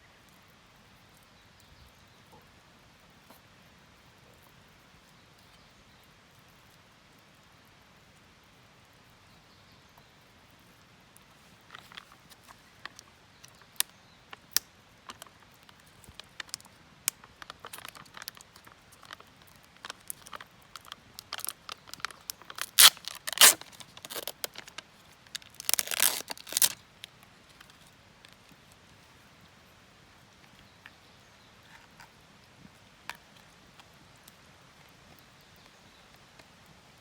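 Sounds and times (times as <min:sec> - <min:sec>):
crinkling handling sounds: 0:11.4 - 0:29.0.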